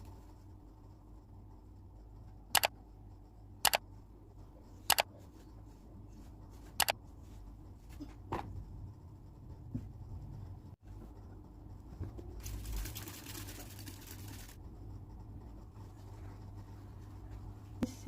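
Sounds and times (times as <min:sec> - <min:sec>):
faint low hum: 0:00.0 - 0:18.0
sharp double clicks: 0:03.6 - 0:03.8.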